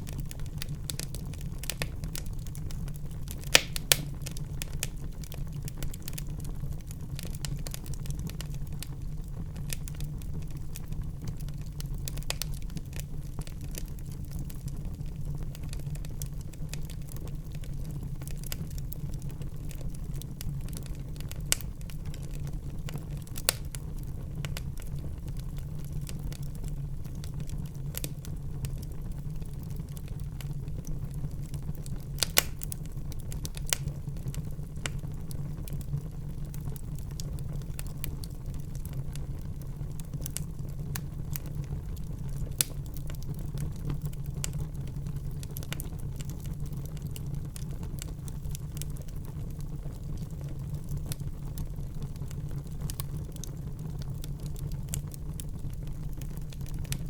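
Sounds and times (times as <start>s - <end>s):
fire crackles and pops: 0.0s - 57.0s
fire rumbling: 0.0s - 57.0s.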